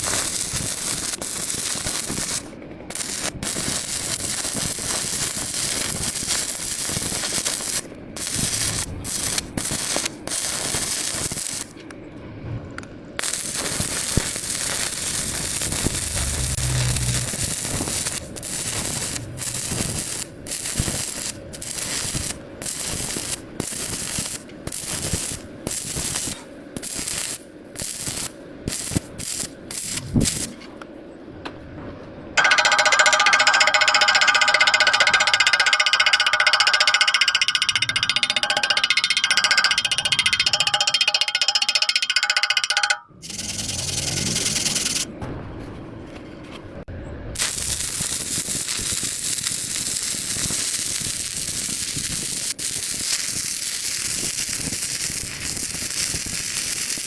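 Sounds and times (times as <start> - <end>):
welding arc crackling: 0.0 - 11.8, 13.2 - 30.6, 43.2 - 45.1, 47.4 - 57.0.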